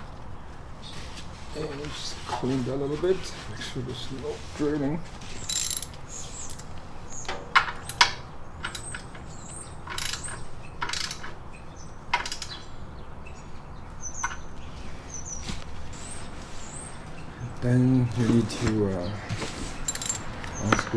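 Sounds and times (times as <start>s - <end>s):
socket ratchet clicking: 5.5s - 6.7s, 7.8s - 11.4s, 12.1s - 12.6s, 19.9s - 20.6s.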